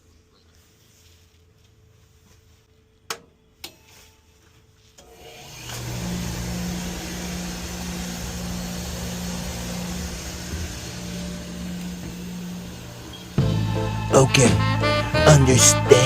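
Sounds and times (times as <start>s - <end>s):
heating boiler running: 5.0s - 14.1s.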